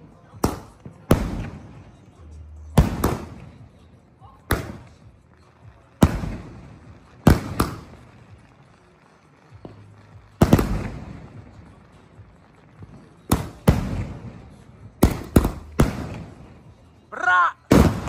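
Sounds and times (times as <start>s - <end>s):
firework bangs: 0.0s - 17.0s, 17.6s - 18.0s
person yelling or laughing: 17.1s - 17.6s.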